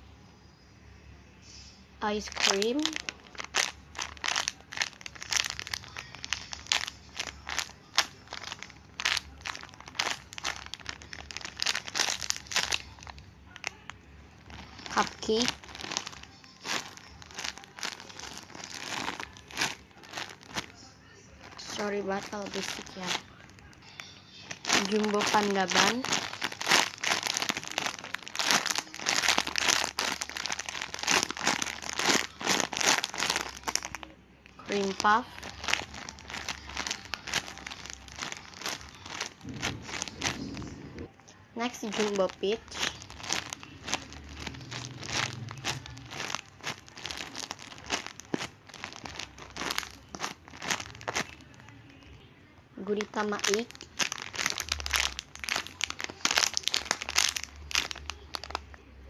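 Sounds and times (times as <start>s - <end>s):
plastic packaging crinkling: 2.0s - 52.1s, 52.8s - 58.9s.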